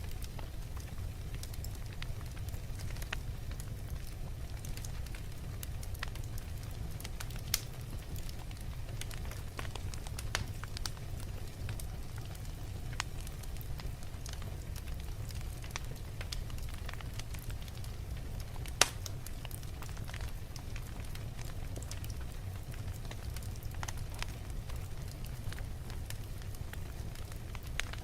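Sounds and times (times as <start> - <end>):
fire crackling: 0.0 - 28.0
fire rumbling: 0.0 - 28.0
loud pop from fire: 18.8 - 19.1.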